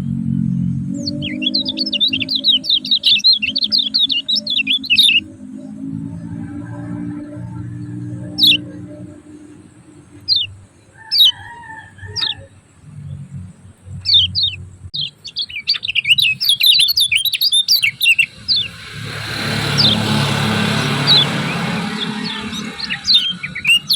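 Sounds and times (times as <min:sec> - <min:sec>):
low hum: 0:00.0 - 0:10.9
bird chirping call: 0:00.0 - 0:23.9.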